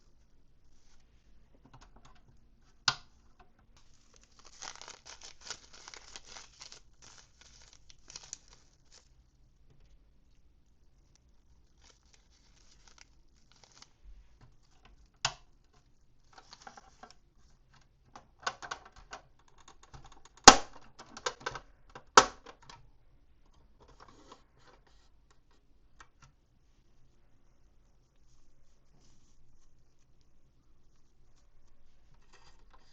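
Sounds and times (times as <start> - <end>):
packaging rustling and crinkling: 3.8 - 9.2, 11.2 - 14.7.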